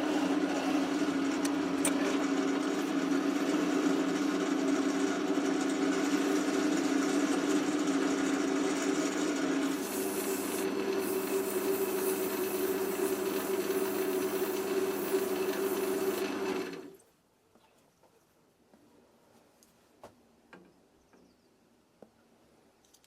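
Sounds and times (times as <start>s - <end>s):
power tool motor running: 0.0s - 17.0s.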